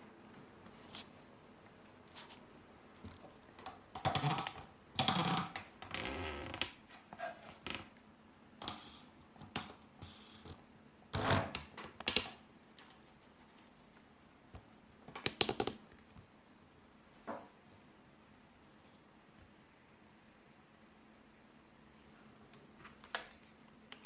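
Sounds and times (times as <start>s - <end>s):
plastic keyboard clicks and clatter: 3.0s - 5.7s, 11.2s - 12.4s, 15.1s - 15.8s.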